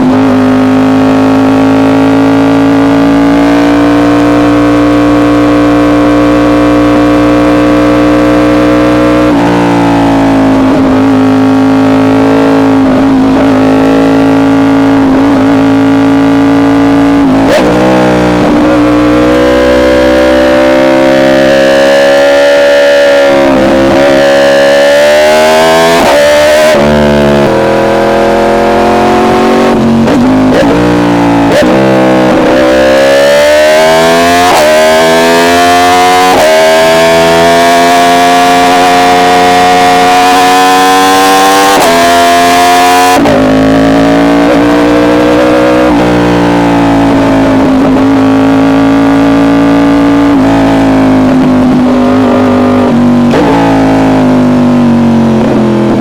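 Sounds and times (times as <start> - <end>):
motorcycle engine at high revs: 0.0 - 56.0.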